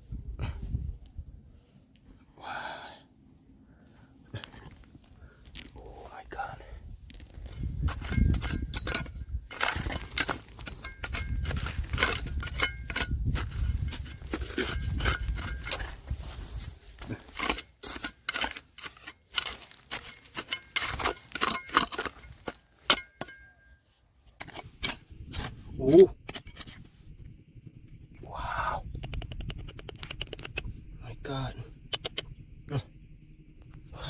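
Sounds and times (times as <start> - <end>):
gravel clicking and scraping: 0.4 - 34.0
low rumble: 3.1 - 17.4, 25.0 - 34.0.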